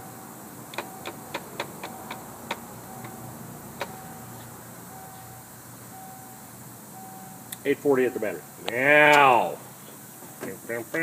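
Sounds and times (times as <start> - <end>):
faint low hum: 0.0 - 11.0
sharp clicks: 0.7 - 3.2
short high beeps: 3.8 - 4.3, 4.9 - 6.4, 7.0 - 7.5.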